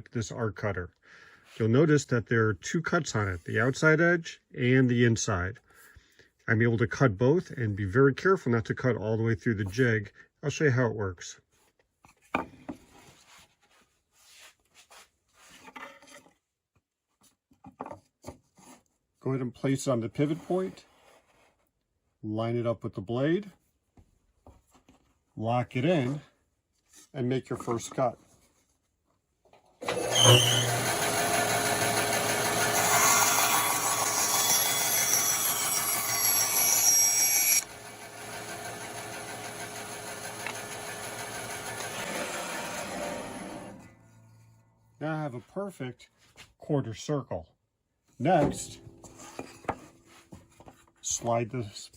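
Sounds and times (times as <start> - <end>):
bandsaw cutting wood: 29.8 - 44.6.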